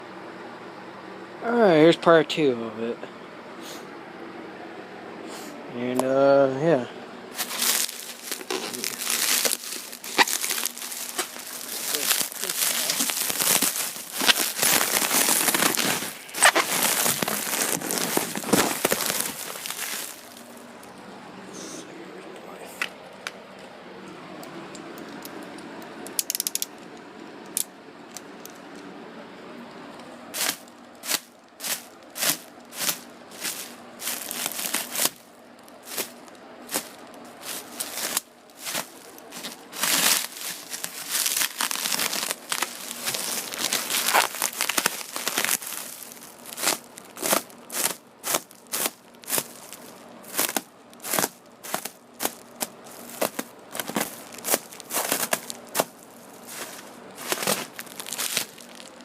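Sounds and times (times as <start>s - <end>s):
packaging crinkling by hand: 7.4s - 20.7s, 30.4s - 59.0s.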